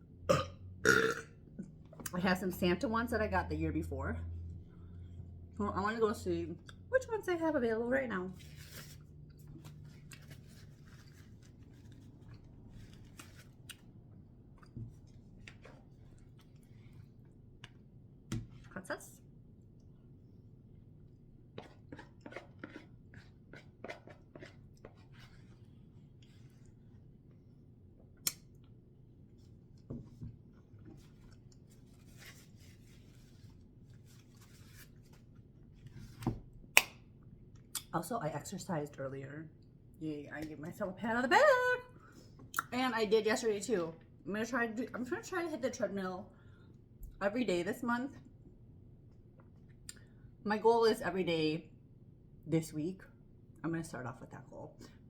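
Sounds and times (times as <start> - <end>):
faint rustling and handling: 8.2 - 13.9, 29.2 - 36.5.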